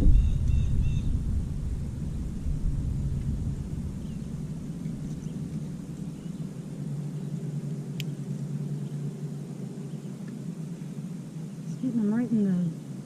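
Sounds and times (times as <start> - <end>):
boat motor humming: 1.2 - 13.0.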